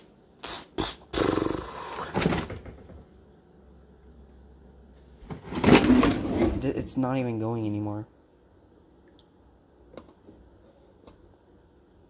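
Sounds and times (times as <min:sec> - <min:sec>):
rattling and scraping: 0:05.2 - 0:06.8.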